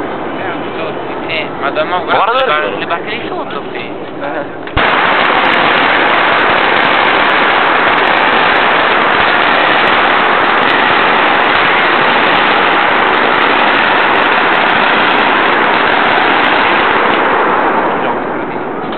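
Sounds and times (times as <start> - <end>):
fireworks crackling: 4.6 - 18.9.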